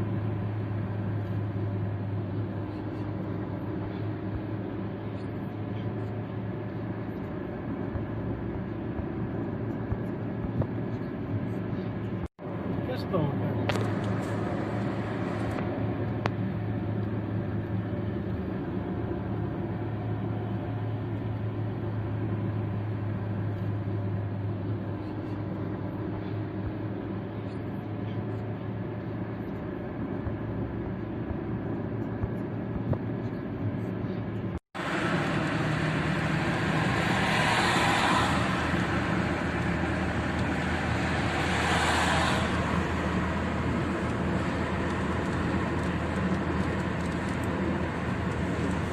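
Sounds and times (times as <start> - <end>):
car road and engine noise: 0.0 - 48.9
rain on windshield: 34.8 - 48.9.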